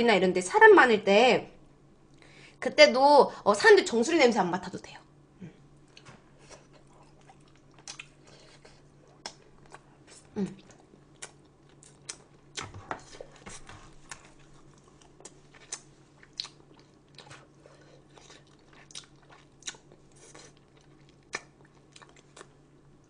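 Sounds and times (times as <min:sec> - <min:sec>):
chewing and crunching food: 0:05.8 - 0:23.0.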